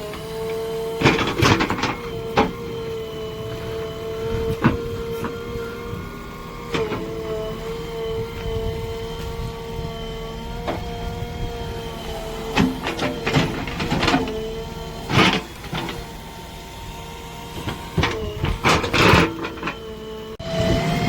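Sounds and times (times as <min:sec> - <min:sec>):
heavy diesel machinery running: 0:00.0 - 0:21.0
sharp clanks and knocks: 0:01.0 - 0:02.9, 0:12.4 - 0:14.4, 0:17.6 - 0:19.9.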